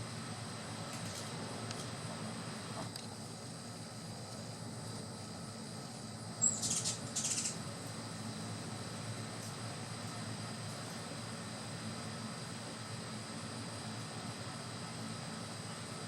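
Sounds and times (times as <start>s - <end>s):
steady background hum: 0.0s - 16.0s
high bird chirp: 6.4s - 7.6s.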